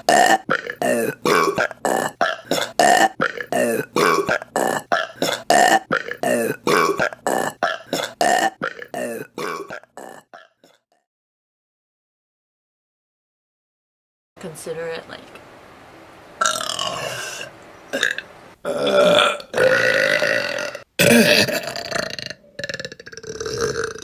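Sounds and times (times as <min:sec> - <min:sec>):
woman burping: 0:00.0 - 0:10.8, 0:16.4 - 0:24.0.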